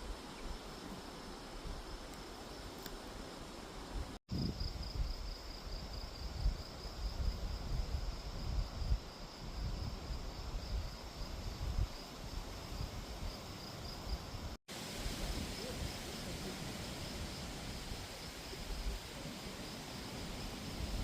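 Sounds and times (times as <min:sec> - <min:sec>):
insects trilling: 0:04.3 - 0:21.0.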